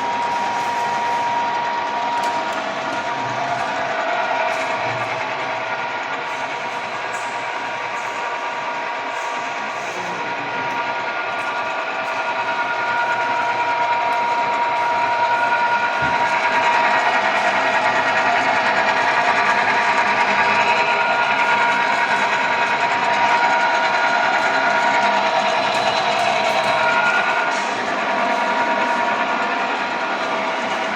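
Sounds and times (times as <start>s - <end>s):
milling machine whining: 0.0s - 30.9s.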